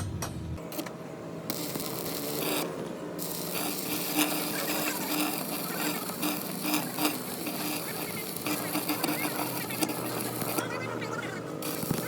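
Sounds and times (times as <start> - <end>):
rhythmic mechanical clicking and rattling: 0.0 - 12.0.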